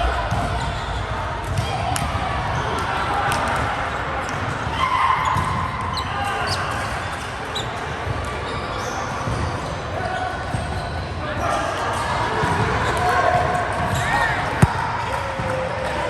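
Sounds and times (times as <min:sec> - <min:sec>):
volleyball ball contacts: 0:14.5 - 0:14.9.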